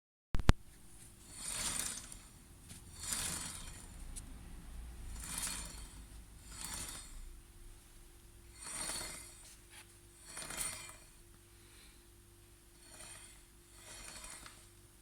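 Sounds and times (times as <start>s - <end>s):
metallic rubbing swishes: 1.2s - 4.4s, 5.0s - 7.4s, 8.5s - 11.2s.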